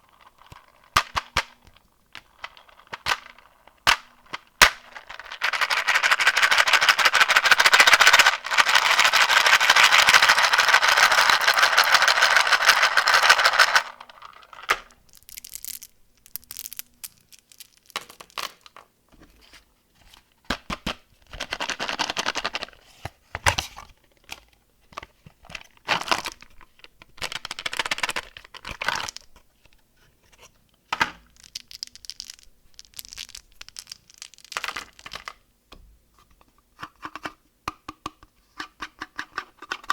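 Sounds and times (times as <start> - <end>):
candy wrapper crinkling: 0.0 - 18.8, 31.2 - 35.4.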